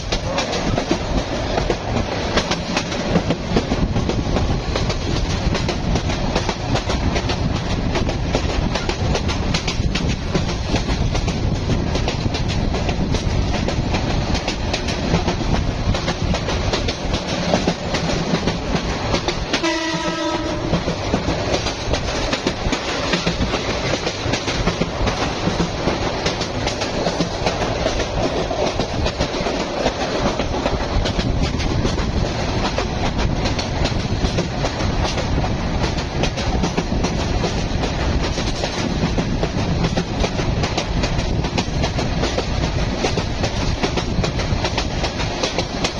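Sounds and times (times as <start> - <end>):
train wheels clicking on rails: 0.0 - 45.9
short train horn: 19.5 - 20.9.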